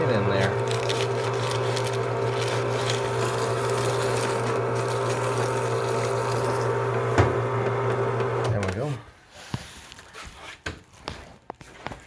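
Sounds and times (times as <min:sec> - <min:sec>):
paper shredder motor running: 0:00.0 - 0:08.6.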